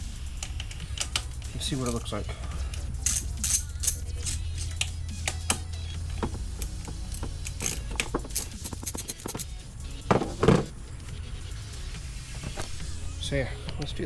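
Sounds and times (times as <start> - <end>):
steady low hum: 0.0 - 14.0
metal hand tools clinking: 0.3 - 10.8.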